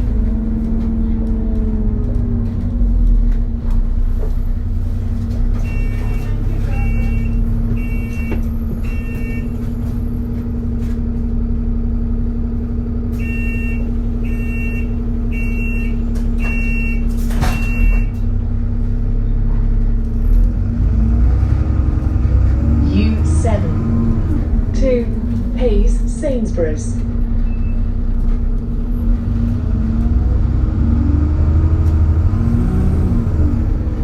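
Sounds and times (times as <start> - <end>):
diesel engine running: 0.0 - 34.0
short high warning beeps: 5.7 - 8.3.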